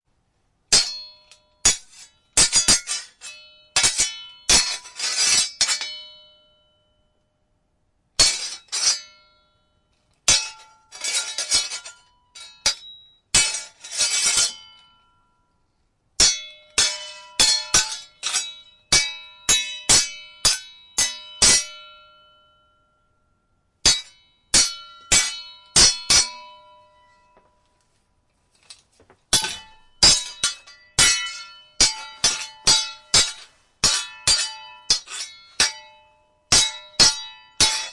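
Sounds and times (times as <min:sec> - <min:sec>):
sword blades clashing: 0:00.7 - 0:06.4, 0:08.2 - 0:09.3, 0:10.3 - 0:14.8, 0:16.2 - 0:22.2, 0:23.8 - 0:27.3, 0:29.3 - 0:37.9.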